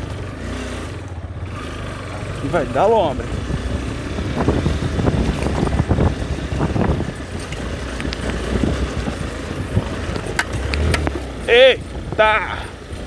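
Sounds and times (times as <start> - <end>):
motorcycle engine humming: 0.0 - 13.0
clattering knocks and rattles: 3.4 - 13.0.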